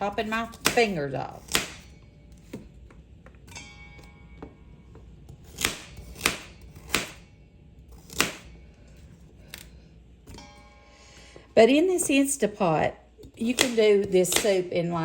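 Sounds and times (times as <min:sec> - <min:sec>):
knife chopping carrots on board: 0:00.3 - 0:01.8, 0:05.5 - 0:07.2, 0:08.0 - 0:08.4, 0:13.3 - 0:14.6
faint background music: 0:03.4 - 0:15.0.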